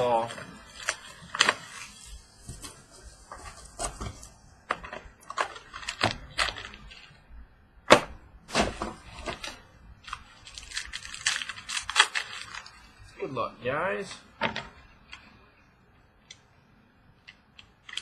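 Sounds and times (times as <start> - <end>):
cardboard and wrapper crinkles: 0.0 - 7.2, 8.6 - 13.2, 17.6 - 18.0.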